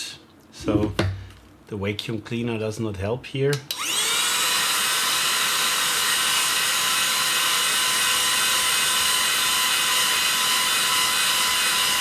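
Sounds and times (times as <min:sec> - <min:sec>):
small vacuum cleaner whining: 0:03.7 - 0:12.0.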